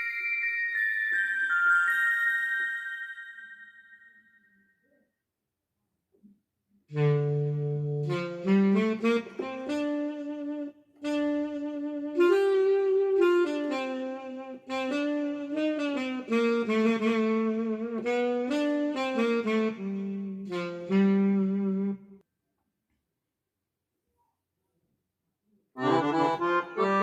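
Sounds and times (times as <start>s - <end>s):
keyboard saxophone-like melody: 6.9s - 22.2s, 25.8s - 27.0s.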